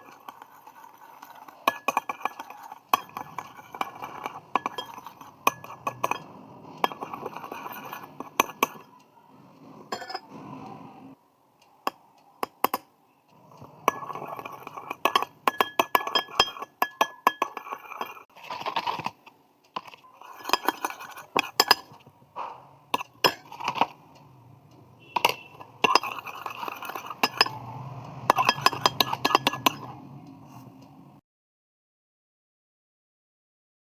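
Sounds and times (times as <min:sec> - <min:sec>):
utensil clinking on glass bowl: 0:00.0 - 0:09.0, 0:09.9 - 0:10.3, 0:13.5 - 0:19.0, 0:19.8 - 0:30.9
slime stirring noise: 0:00.0 - 0:11.2, 0:11.8 - 0:31.2.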